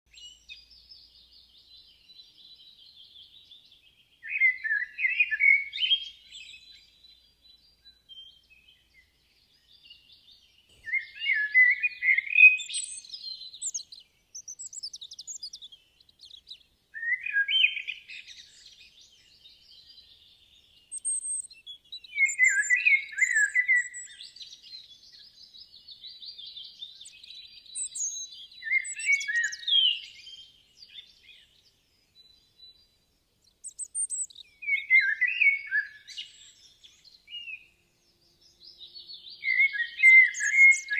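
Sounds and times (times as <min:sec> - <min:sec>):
faint high bird chirps: 0:00.1 - 0:40.9
songbird singing: 0:00.1 - 0:40.9.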